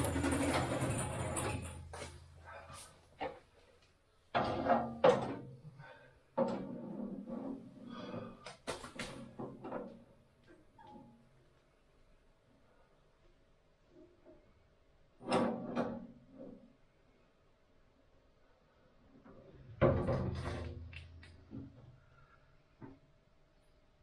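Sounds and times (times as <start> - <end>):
objects knocking and clunking: 0.0 - 3.5, 4.3 - 11.2, 19.2 - 22.0.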